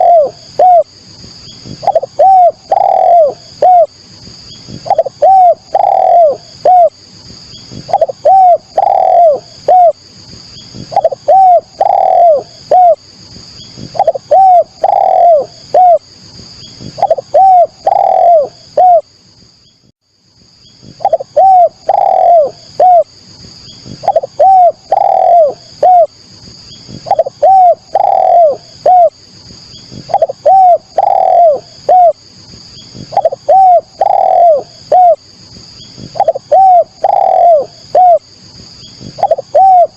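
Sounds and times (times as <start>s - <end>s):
dove cooing: 0.0s - 0.9s, 1.6s - 4.0s, 4.6s - 7.0s, 7.7s - 10.0s, 10.7s - 13.0s, 13.8s - 16.1s, 16.8s - 19.1s, 20.8s - 23.1s, 23.8s - 26.1s, 26.8s - 29.2s, 29.9s - 32.2s, 32.9s - 35.2s, 35.9s - 38.3s, 39.0s - 39.9s
faint high chirping: 20.6s - 39.9s.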